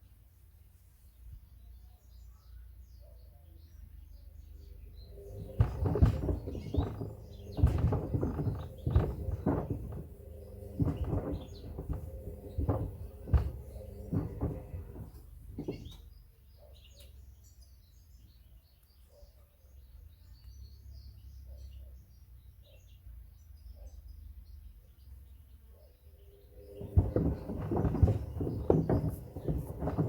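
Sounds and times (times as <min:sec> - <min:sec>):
faint birdsong: 0:00.0 - 0:30.0
washing machine motor hum: 0:04.6 - 0:16.1, 0:26.2 - 0:30.0
wood knocking in washing machine drum: 0:05.1 - 0:16.0, 0:26.6 - 0:30.0.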